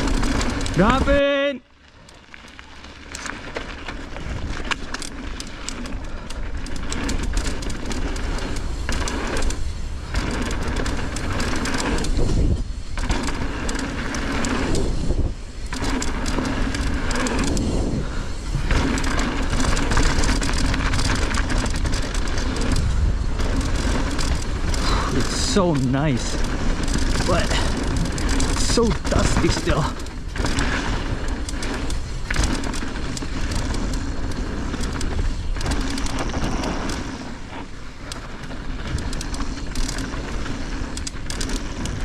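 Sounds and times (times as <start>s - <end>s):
bike chain and frame rattling: 0.0s - 42.0s
bike tyres rolling over dirt: 0.0s - 42.0s
wind on microphone: 16.6s - 32.7s.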